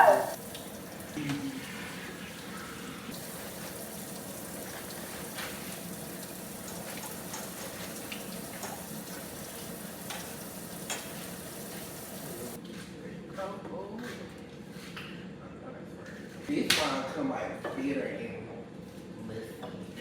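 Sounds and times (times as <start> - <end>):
food sizzling in a pan: 0.0 - 12.6.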